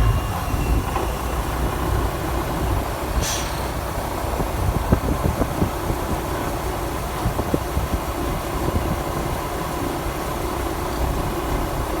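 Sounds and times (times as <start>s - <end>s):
loader engine running: 0.0s - 7.3s.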